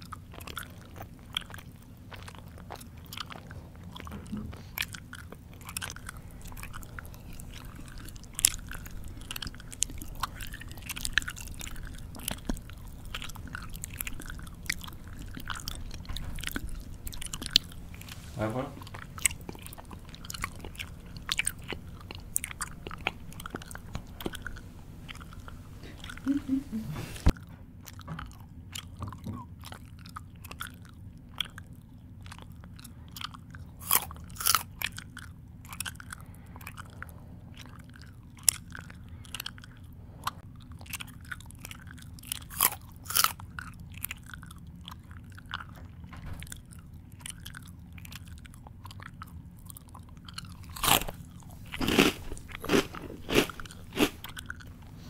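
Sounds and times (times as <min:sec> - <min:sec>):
crunchy bites: 0:00.0 - 0:26.2, 0:33.2 - 0:36.9, 0:40.8 - 0:45.7, 0:46.5 - 0:54.7
chewing with mouth smacks: 0:00.0 - 0:55.0.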